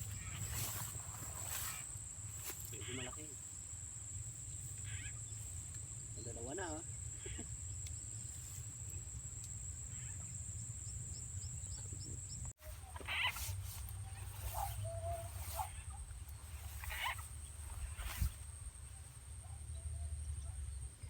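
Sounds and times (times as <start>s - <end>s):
frogs calling: 0.0s - 20.8s
high insect drone: 0.0s - 21.0s.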